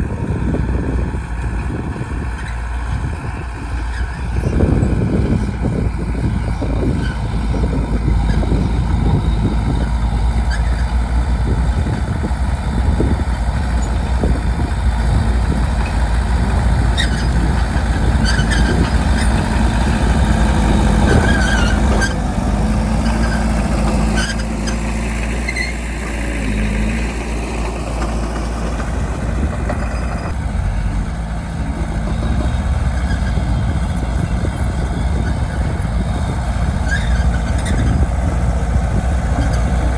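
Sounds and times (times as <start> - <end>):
bulldozer diesel engine rumble: 0.0 - 39.9
short high squeals: 23.0 - 26.0.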